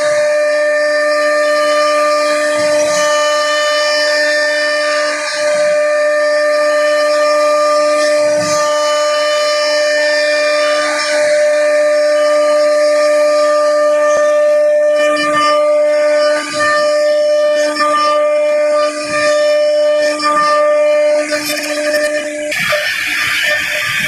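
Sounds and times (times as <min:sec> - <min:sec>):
router spindle whining: 0:00.0 - 0:24.0.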